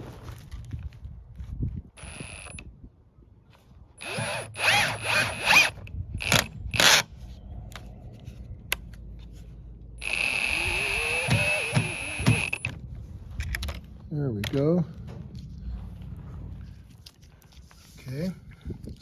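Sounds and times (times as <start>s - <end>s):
cordless drill motor bursts: 2.0s - 2.6s, 4.0s - 7.0s, 10.0s - 12.7s.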